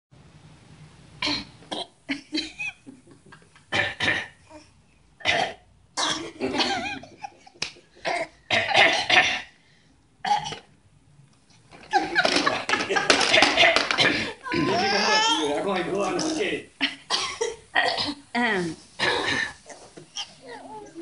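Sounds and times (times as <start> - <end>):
baby fake coughing: 8.0 - 9.5, 20.1 - 20.6.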